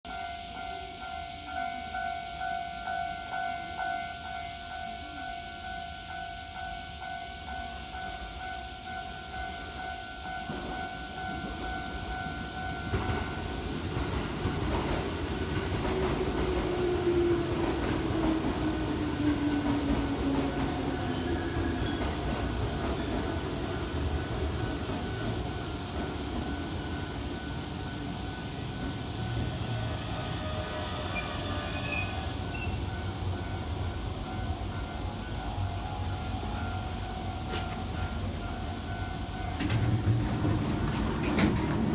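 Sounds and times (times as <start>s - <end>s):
electric train rumbling: 0.1s - 41.9s
train motor whine: 12.9s - 41.9s.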